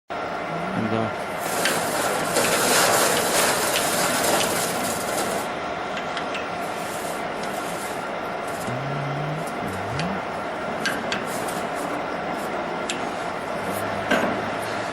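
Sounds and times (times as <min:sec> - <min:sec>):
sawmill machine hissing: 0:00.4 - 0:05.6, 0:06.5 - 0:14.9.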